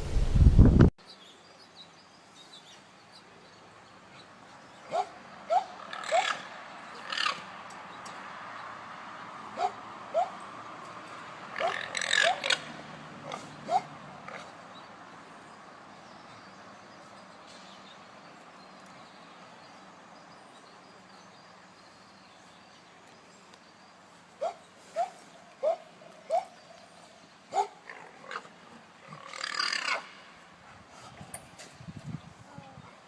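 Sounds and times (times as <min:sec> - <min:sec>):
faint background noise: 0:00.0 - 0:33.0
alpaca calls: 0:11.6 - 0:12.7.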